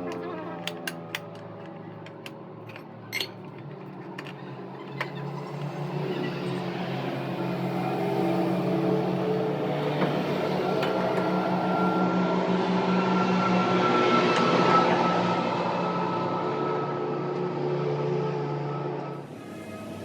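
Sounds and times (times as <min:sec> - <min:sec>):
metal clinks: 0:00.8 - 0:04.4
machine humming: 0:05.5 - 0:12.0.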